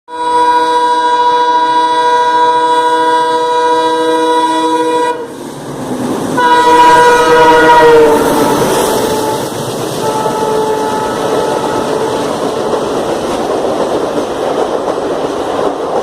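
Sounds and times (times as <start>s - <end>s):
locomotive horn blasts: 0.1s - 5.3s, 6.4s - 12.4s
running train noise: 0.1s - 16.0s.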